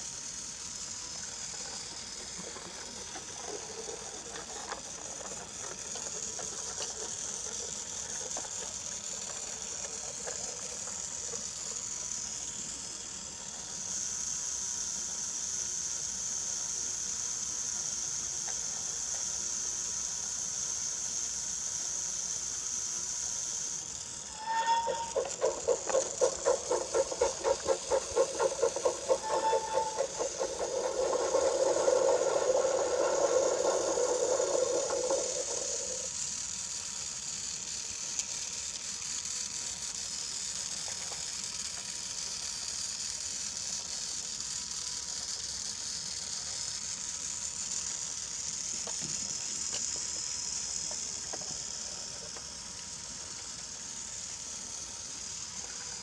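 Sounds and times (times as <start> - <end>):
toy train motor whine: 0.0 - 56.0
wheels clattering on wooden track: 24.4 - 36.1.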